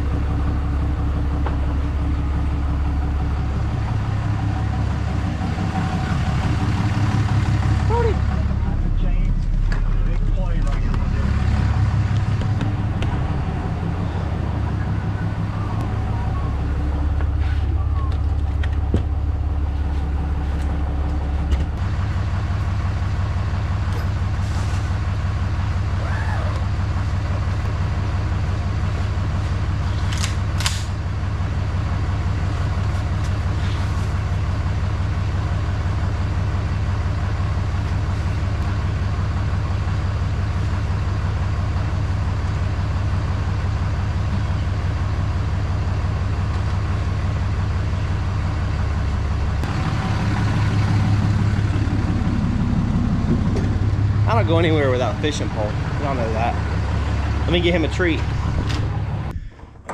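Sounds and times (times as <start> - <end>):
vehicle engine running: 0.0 - 59.9.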